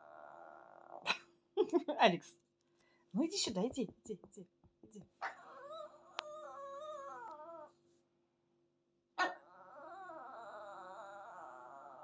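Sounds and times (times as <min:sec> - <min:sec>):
dog whining: 0:00.0 - 0:01.2, 0:05.2 - 0:07.8, 0:09.2 - 0:12.0
dog yelping: 0:05.2 - 0:07.7, 0:09.2 - 0:12.0.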